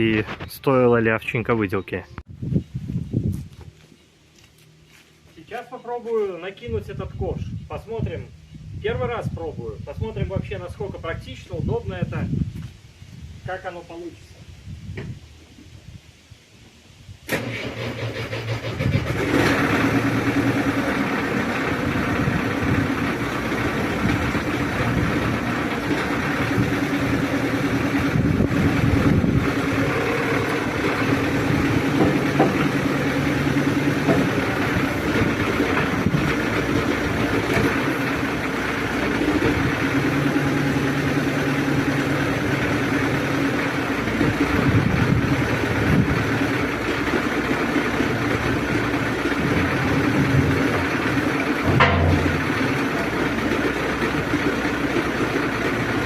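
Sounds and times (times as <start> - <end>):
excavator diesel engine working: 17.3 - 56.0.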